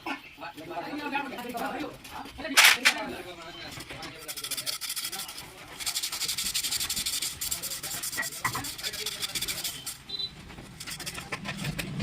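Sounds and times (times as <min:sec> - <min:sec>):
abrasive sanding strokes on metal: 0:03.8 - 0:11.9.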